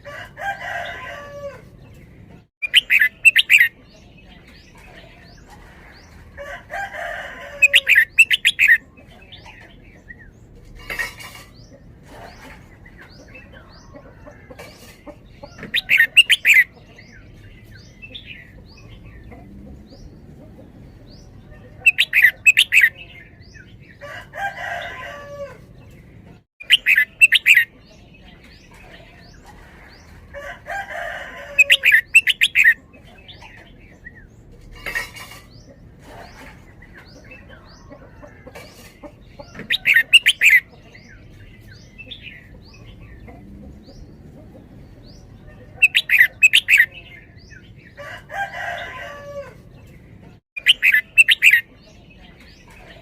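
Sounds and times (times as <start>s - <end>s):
bird singing sharp repeated notes: 2.6s - 3.8s, 26.6s - 27.7s, 50.6s - 51.7s.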